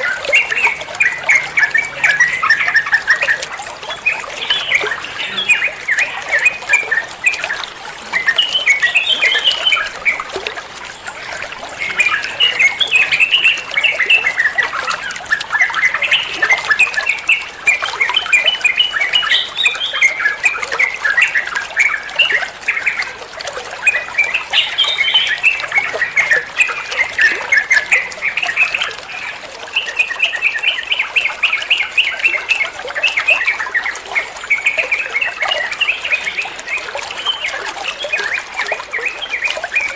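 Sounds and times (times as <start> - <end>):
bird singing chattering phrases: 0.0 - 23.0.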